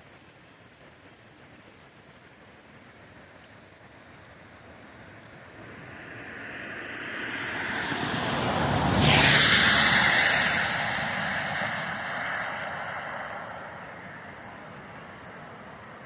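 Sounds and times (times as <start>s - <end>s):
car passing by: 5.2s - 16.0s.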